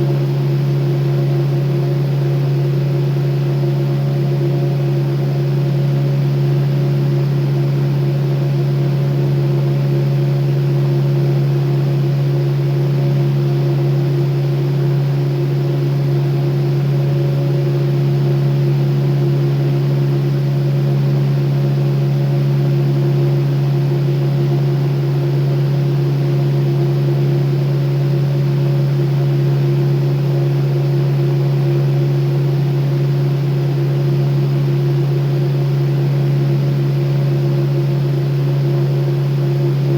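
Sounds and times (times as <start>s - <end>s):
electric fan humming: 39.6s - 39.9s.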